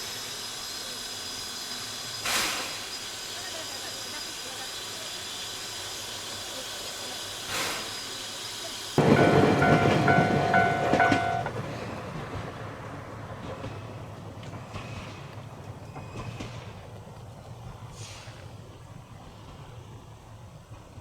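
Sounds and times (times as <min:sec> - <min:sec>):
steam train hissing: 0:00.0 - 0:11.6
rail noise: 0:08.6 - 0:21.0
level-crossing bell ringing: 0:09.0 - 0:11.6.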